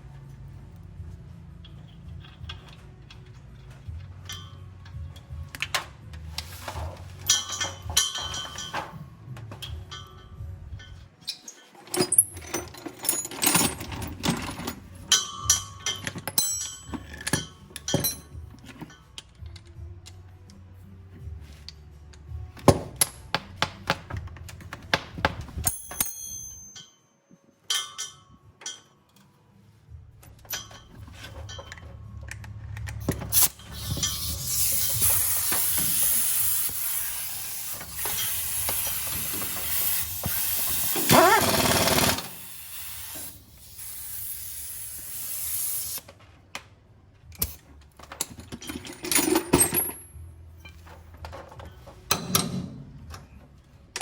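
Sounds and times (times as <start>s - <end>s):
metal tools clinking: 1.6s - 5.8s, 6.4s - 19.7s, 25.6s - 29.4s, 30.2s - 43.9s, 47.4s - 53.4s
loud steady hiss: 34.4s - 41.1s.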